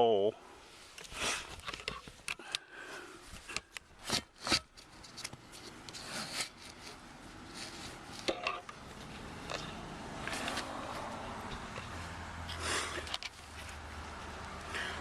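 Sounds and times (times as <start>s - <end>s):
seatbelt strap rubbing on plastic: 4.0s - 9.3s.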